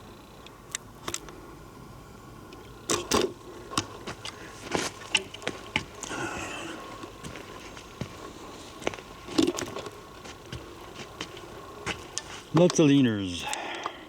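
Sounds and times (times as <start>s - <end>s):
footsteps on dirt trail: 3.4s - 13.6s.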